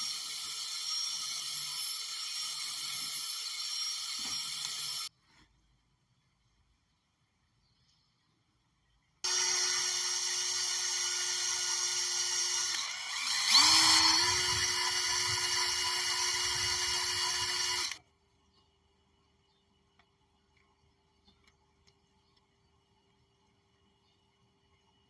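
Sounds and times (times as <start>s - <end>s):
electric drill drilling: 0.0s - 5.1s, 9.3s - 18.0s.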